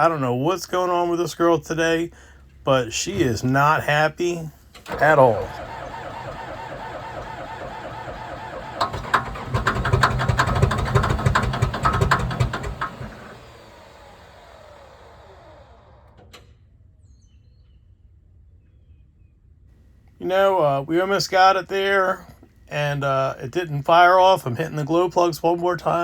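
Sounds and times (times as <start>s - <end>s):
diesel engine firing unevenly: 4.8s - 16.4s
starter motor cranking: 4.8s - 16.4s.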